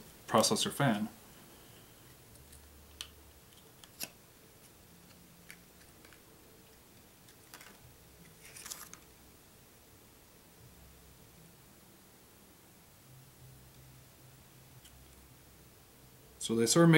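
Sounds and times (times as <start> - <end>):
plastic cover rustle: 7.3 - 9.1.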